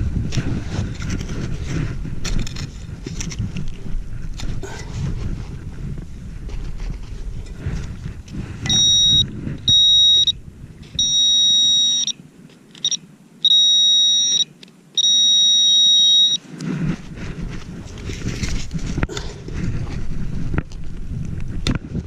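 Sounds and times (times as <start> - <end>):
wind noise: 0.0 - 14.4, 15.0 - 22.0
metal detector beep: 8.6 - 12.2, 12.8 - 16.4.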